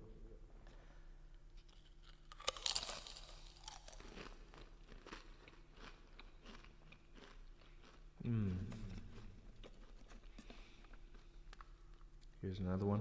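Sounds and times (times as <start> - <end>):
person biting into potato crisp: 1.6 - 10.5
chewing crisp crackles: 1.6 - 12.4.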